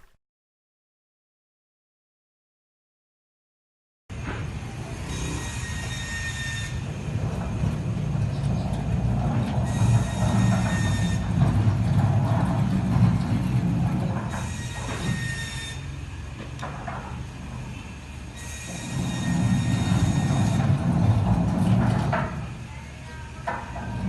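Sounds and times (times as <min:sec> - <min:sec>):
sliding gate rumbling on rail: 0:04.1 - 0:22.7, 0:23.4 - 0:24.0
high thin squeal: 0:05.1 - 0:06.9, 0:09.7 - 0:11.2, 0:14.3 - 0:15.9, 0:18.4 - 0:20.6.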